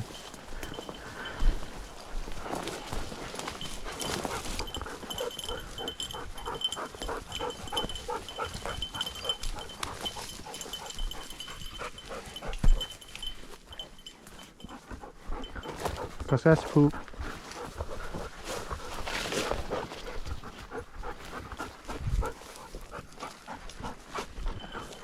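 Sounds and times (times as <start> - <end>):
dog panting fast: 2.3 - 25.0.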